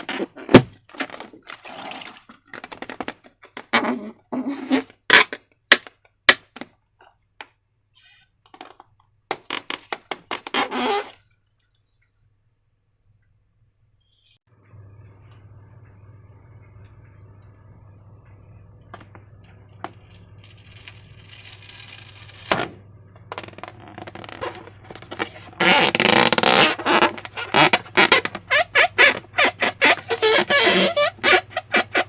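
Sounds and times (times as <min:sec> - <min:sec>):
steady low hum: 0:14.5 - 0:32.0.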